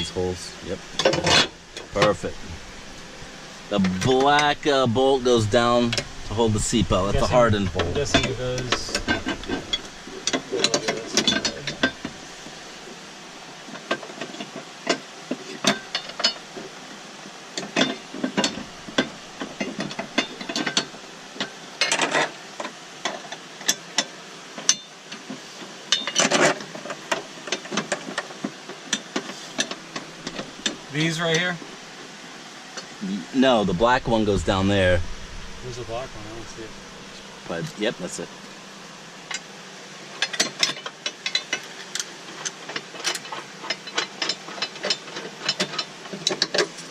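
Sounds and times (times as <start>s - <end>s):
tools and metal parts knocking: 40.2s - 46.7s.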